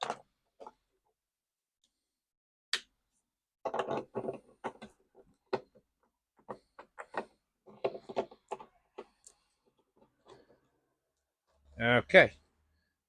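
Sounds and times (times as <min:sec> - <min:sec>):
small plastic clicks and rattles: 0:06.4 - 0:10.6.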